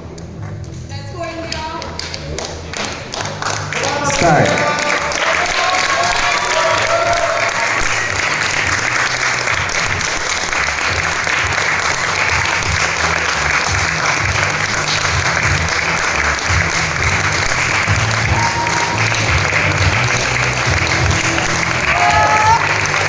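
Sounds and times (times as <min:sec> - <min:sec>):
crowd applauding: 0:00.7 - 0:23.0
low pulsing music beat: 0:07.8 - 0:23.0.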